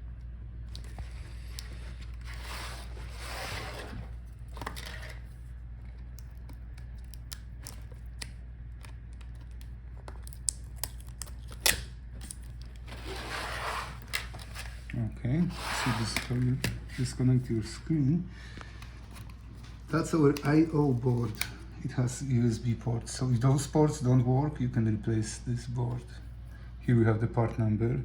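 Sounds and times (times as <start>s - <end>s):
steady low hum: 0.0s - 28.0s
scraping and rustling: 0.7s - 6.0s, 12.6s - 17.2s.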